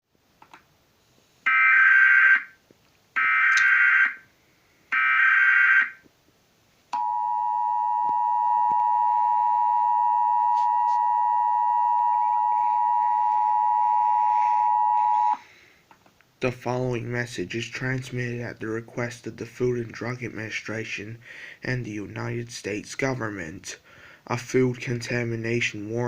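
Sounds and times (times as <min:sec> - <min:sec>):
two-tone attention signal: 0:07.0 - 0:15.4.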